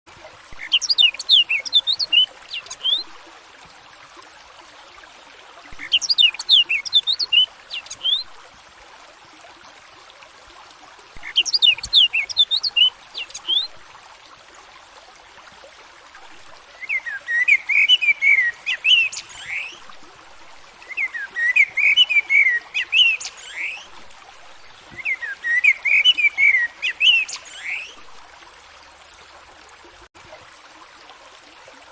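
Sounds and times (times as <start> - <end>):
songbird singing: 0.6 - 3.2, 5.8 - 8.4, 11.2 - 13.8, 16.4 - 28.1.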